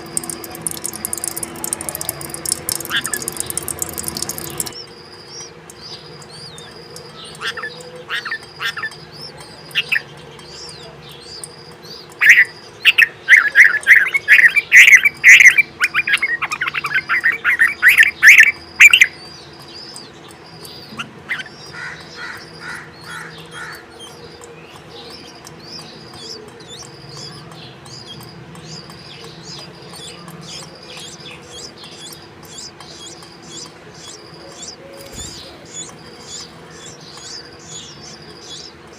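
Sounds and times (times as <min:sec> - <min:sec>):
faint high tone with chirps: 0:00.0 - 0:10.0
chicks squawking: 0:00.0 - 0:38.9.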